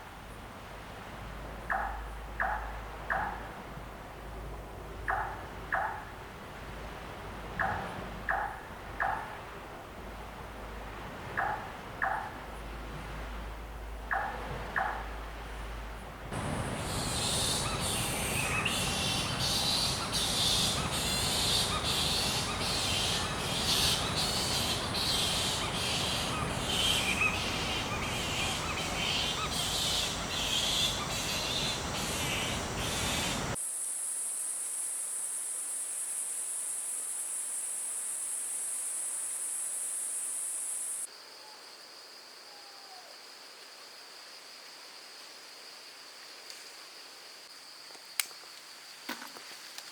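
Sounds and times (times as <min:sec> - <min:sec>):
insect low trill: 0:16.3 - 0:41.1
insect pulsing chorus: 0:16.3 - 0:41.4
insect high-pitched drone: 0:16.4 - 0:41.1.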